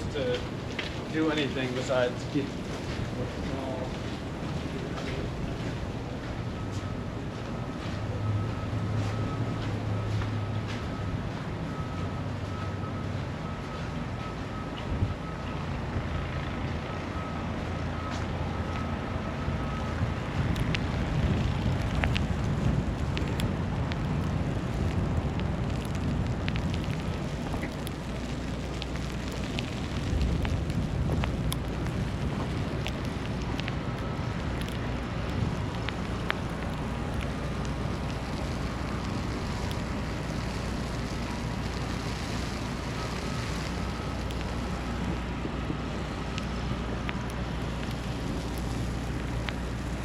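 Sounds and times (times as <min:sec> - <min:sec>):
low rumble: 0:19.5 - 0:50.0
faint ticks: 0:46.2 - 0:50.0.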